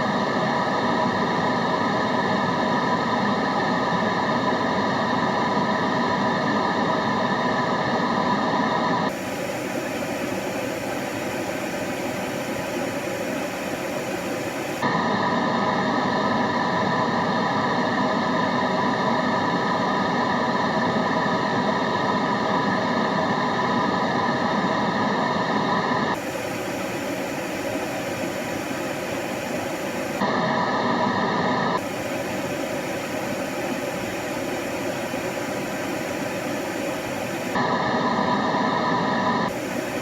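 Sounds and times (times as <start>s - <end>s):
white noise hiss: 26.2s - 30.3s, 31.8s - 37.6s, 39.5s - 40.0s.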